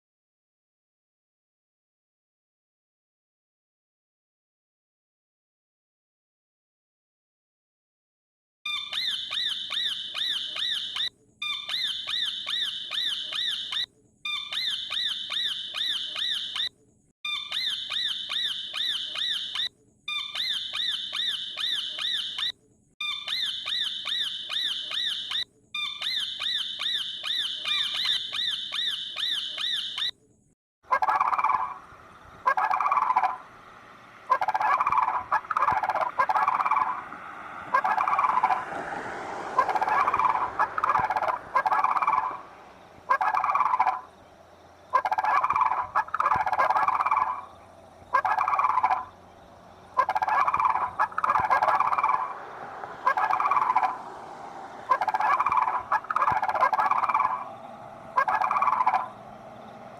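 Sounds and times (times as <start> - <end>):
high warbling bird call: 8.7 - 16.7, 17.3 - 30.1, 30.9 - 38.6, 39.5 - 59.9
turkey gobbling: 30.9 - 33.5, 34.2 - 38.7, 39.5 - 59.9.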